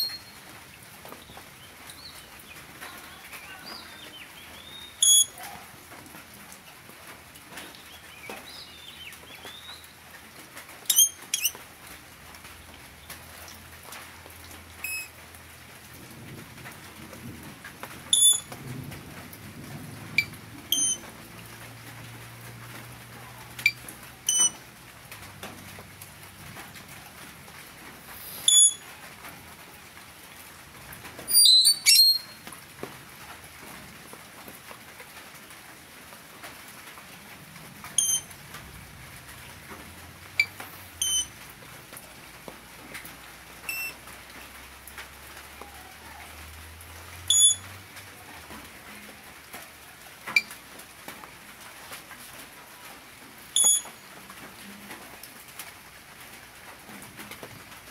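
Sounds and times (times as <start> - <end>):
parrot shrill calls: 5.0 - 5.4, 10.9 - 11.5, 18.1 - 18.4, 20.7 - 21.0, 24.3 - 24.5, 28.5 - 28.8, 31.3 - 32.4, 41.0 - 41.3, 47.3 - 47.6, 53.6 - 53.9.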